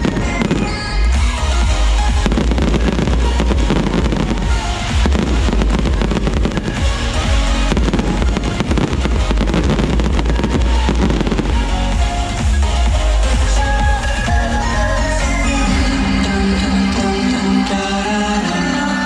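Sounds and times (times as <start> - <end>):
fireworks bangs and crackling: 0.0 - 14.2
loud music with heavy bass: 0.0 - 19.0.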